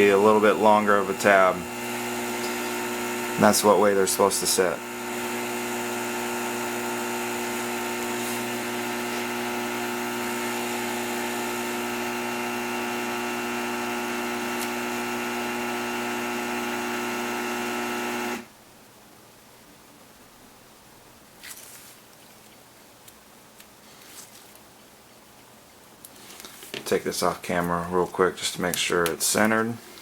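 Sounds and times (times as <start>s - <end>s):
small motor humming: 0.3s - 18.5s.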